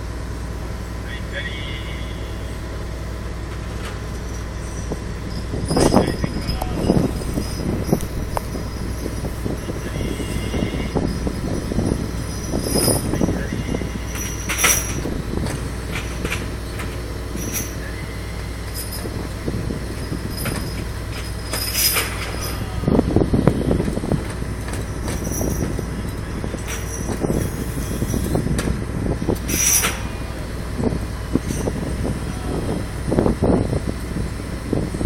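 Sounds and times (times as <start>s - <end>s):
machinery engine drone: 0.0s - 35.0s
machinery rumble: 0.0s - 35.0s
metallic clinks and squeaks: 4.0s - 22.9s, 24.6s - 28.5s, 29.3s - 30.3s, 31.4s - 31.9s.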